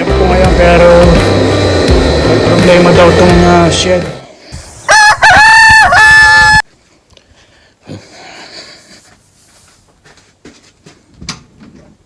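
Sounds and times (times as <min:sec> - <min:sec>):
rooster crowing: 0:04.8 - 0:06.7.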